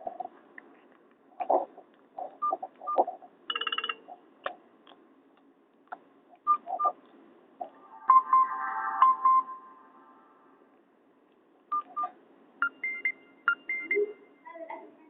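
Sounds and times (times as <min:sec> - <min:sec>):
phone ringtone: 0:03.5 - 0:04.1, 0:07.9 - 0:10.4
short beeps: 0:08.0 - 0:10.0.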